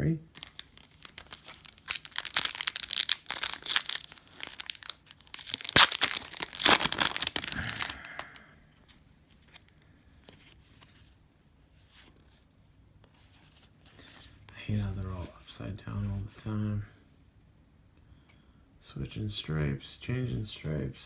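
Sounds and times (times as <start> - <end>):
card pack wrapper tearing and crinkling: 0.4 - 8.4
cards being handled: 0.4 - 11.1.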